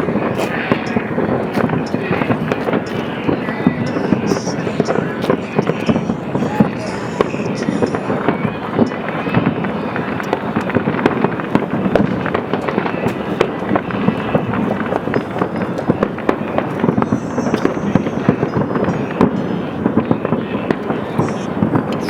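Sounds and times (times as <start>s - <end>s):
fireworks bangs and crackles: 0.0s - 22.0s.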